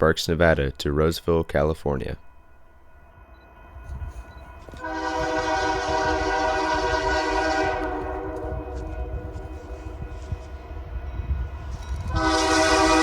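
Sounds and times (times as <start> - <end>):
diesel train rumble: 0.0 - 13.0
locomotive air horn blast: 4.8 - 9.2, 12.1 - 13.0.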